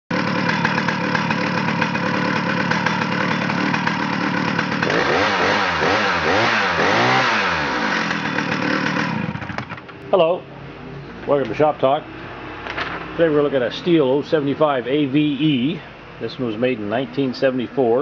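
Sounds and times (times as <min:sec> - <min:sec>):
chainsaw engine revving: 0:00.1 - 0:10.0.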